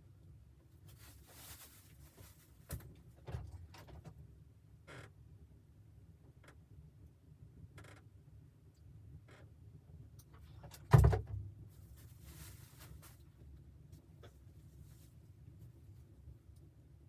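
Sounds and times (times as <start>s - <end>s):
light rustling: 0.8s - 3.0s, 11.8s - 13.5s.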